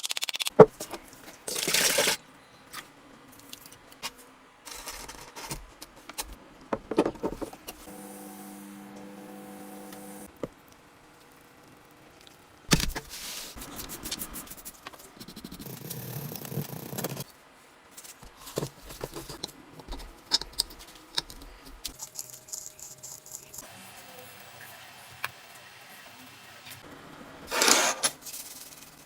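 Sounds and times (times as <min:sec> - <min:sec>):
scraping on gun metal parts: 0:27.5 - 0:28.2.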